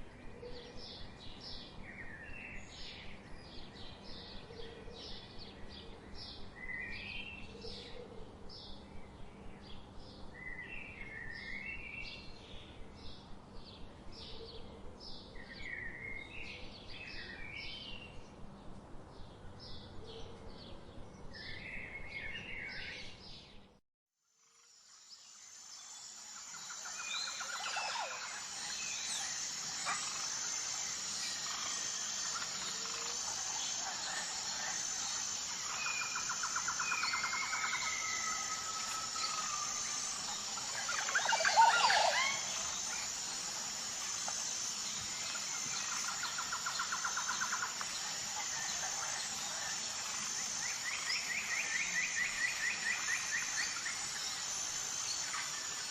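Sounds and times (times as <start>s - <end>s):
steady high-pitched trill: 25.5s - 55.9s
birds calling: 26.8s - 55.9s.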